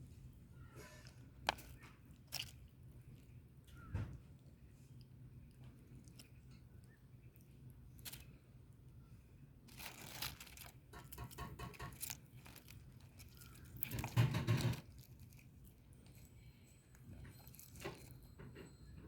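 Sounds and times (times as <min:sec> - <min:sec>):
rustling and tearing: 0:00.8 - 0:03.3, 0:07.3 - 0:08.4, 0:09.6 - 0:18.3.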